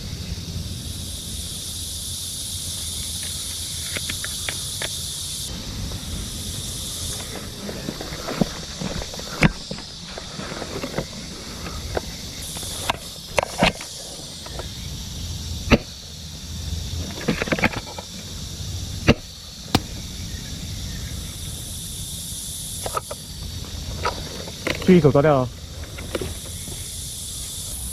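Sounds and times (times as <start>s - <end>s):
high-pitched insect drone: 0.0s - 27.9s
sharp clicks and cracks: 19.7s - 20.1s.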